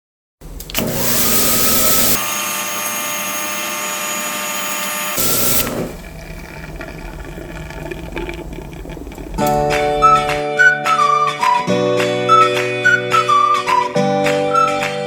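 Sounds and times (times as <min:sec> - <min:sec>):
small electric motor running: 0:00.8 - 0:06.2.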